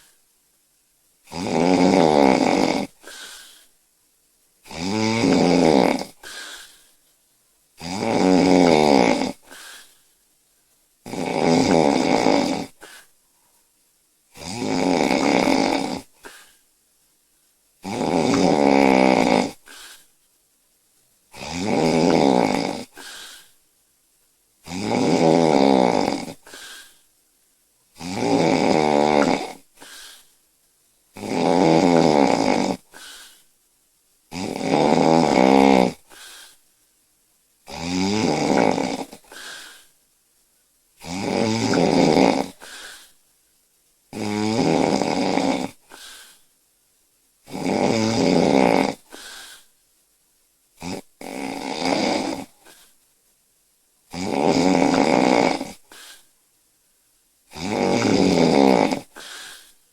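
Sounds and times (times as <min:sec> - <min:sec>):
quiet breath sound: 0:00.0 - 0:01.3, 0:02.1 - 0:04.7, 0:05.4 - 0:07.8, 0:08.6 - 0:14.4, 0:15.4 - 0:24.6, 0:25.8 - 0:28.0, 0:28.9 - 0:31.2, 0:31.9 - 0:33.8, 0:35.4 - 0:37.1, 0:38.4 - 0:40.2, 0:40.9 - 0:43.4, 0:45.1 - 0:46.7, 0:48.4 - 0:50.1, 0:52.3 - 0:53.2, 0:54.6 - 0:56.6, 0:57.8 - 0:59.9
woman snoring: 0:01.3 - 0:03.7, 0:04.6 - 0:06.9, 0:07.8 - 0:10.0, 0:11.0 - 0:13.1, 0:14.3 - 0:16.6, 0:17.8 - 0:20.1, 0:21.3 - 0:23.6, 0:24.6 - 0:27.0, 0:28.0 - 0:30.3, 0:31.2 - 0:33.4, 0:34.3 - 0:36.6, 0:37.7 - 0:39.9, 0:41.0 - 0:43.2, 0:44.1 - 0:46.4, 0:47.4 - 0:49.7, 0:50.8 - 0:53.0, 0:54.1 - 0:56.3, 0:57.5 - 0:59.8.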